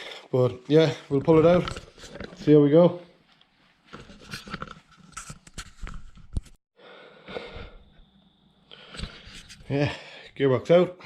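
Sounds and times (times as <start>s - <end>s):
person breathing: 0.0s - 0.3s, 6.8s - 8.0s, 8.7s - 10.4s.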